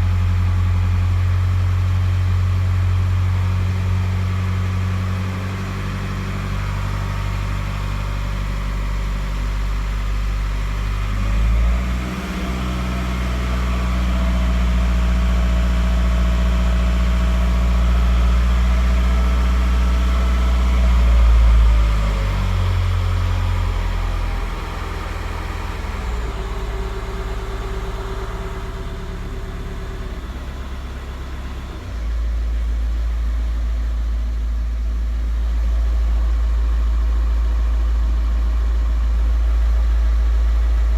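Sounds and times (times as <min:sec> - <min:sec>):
knocking diesel engine: 0:00.0 - 0:40.9.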